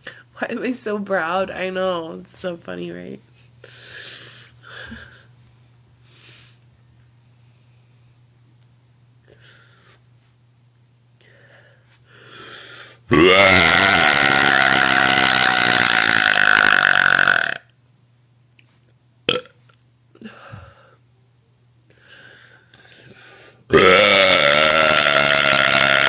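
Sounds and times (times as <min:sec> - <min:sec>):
woman burping: 0:13.1 - 0:17.7, 0:19.3 - 0:19.5, 0:23.7 - 0:26.0.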